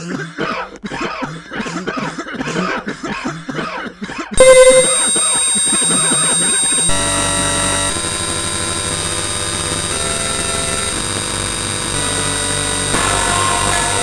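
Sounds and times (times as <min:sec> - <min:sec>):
harsh cacophony of tones: 0:04.4 - 0:14.0
noise haze: 0:04.4 - 0:14.0.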